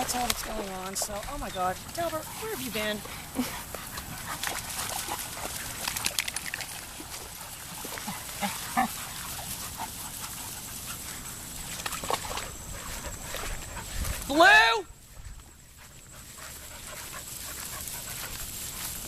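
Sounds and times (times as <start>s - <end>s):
quick clicks: 5.8s - 6.8s.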